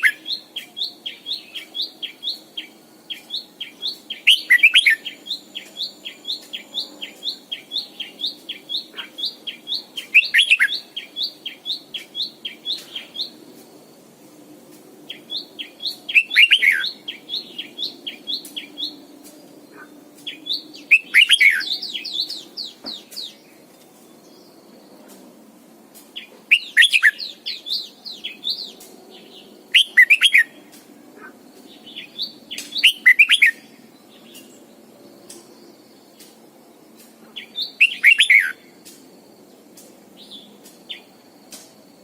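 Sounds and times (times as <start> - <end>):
bird song phrase: 19.6 - 25.2, 31.2 - 38.6.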